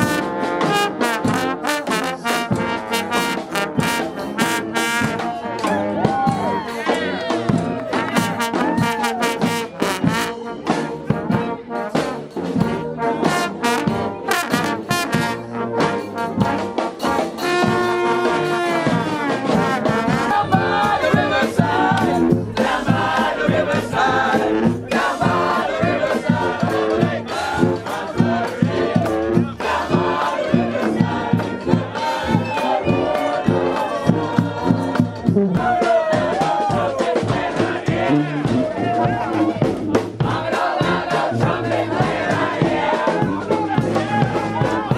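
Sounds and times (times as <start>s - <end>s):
brass band horns: 0.0s - 44.9s
sharp percussion hits: 17.0s - 32.2s.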